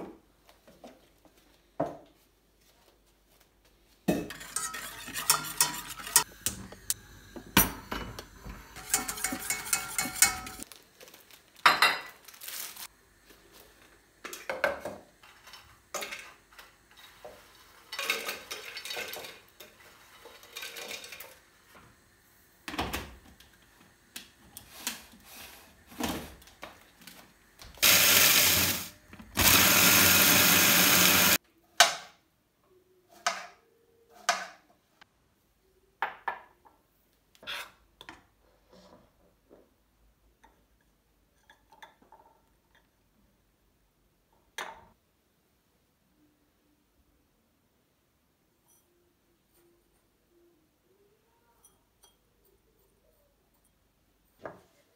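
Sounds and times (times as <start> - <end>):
utensils clinking and knocking: 4.2 - 10.7
kitchen appliance motor running: 27.7 - 31.4.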